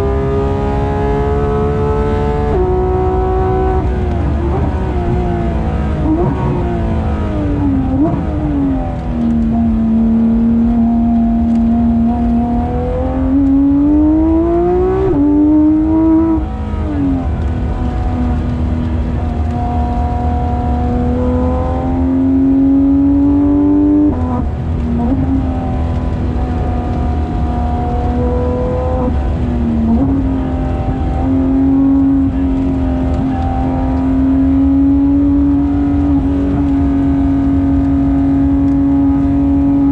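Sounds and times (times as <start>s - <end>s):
sports car engine revving: 0.0s - 39.9s.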